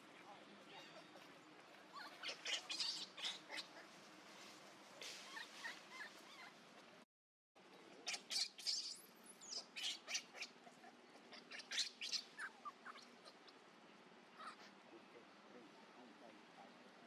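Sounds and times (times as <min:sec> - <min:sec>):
monkeys squeaking and chirping: 0:01.9 - 0:03.8, 0:05.0 - 0:06.6, 0:08.1 - 0:13.4.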